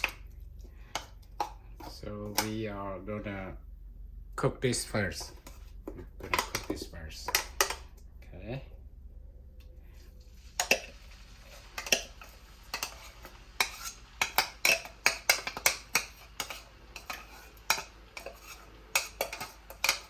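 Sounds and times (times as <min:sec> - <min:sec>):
metal utensil clinking on a pan: 0:10.6 - 0:20.0.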